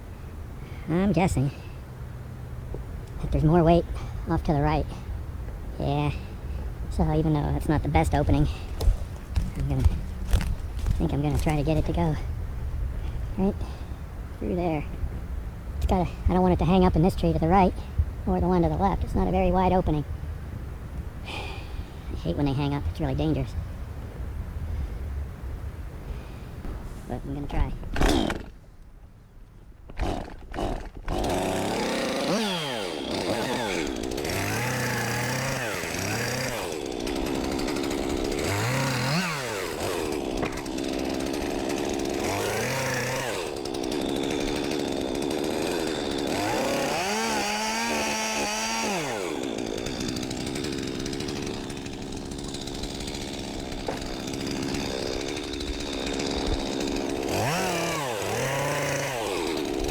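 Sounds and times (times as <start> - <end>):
chainsaw bogging and revving: 3.1 - 15.0, 15.8 - 20.1, 27.4 - 28.6, 29.9 - 59.9.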